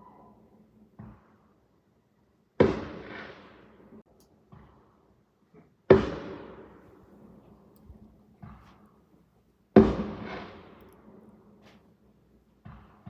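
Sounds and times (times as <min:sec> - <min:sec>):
faint fireworks bangs: 0:00.0 - 0:01.8, 0:02.6 - 0:13.0
fireworks booming: 0:02.6 - 0:05.0, 0:05.9 - 0:13.0.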